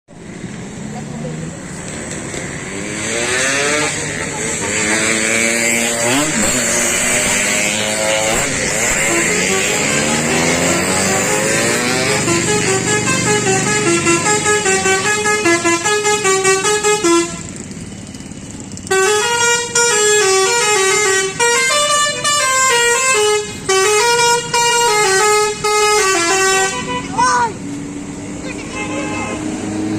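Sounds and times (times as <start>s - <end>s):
multi-tone musical bus horn: 2.8s - 17.8s, 18.8s - 27.5s, 28.4s - 29.9s.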